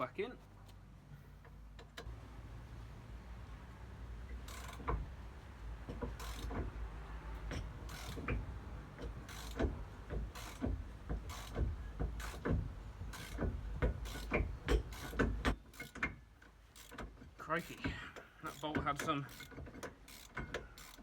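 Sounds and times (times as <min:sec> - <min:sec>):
socket ratchet clicking: 0:04.4 - 0:04.9, 0:06.1 - 0:06.7, 0:07.4 - 0:08.4, 0:09.0 - 0:12.5, 0:13.1 - 0:17.2, 0:18.5 - 0:21.0.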